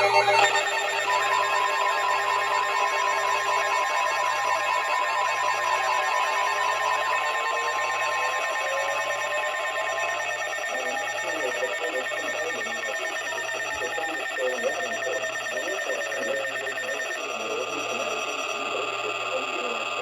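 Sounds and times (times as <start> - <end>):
gliding electronic tones: 0.0 - 20.0
signal noise: 0.0 - 20.0
steady electronic tone: 0.0 - 20.0
faint muffled voices: 4.2 - 20.0.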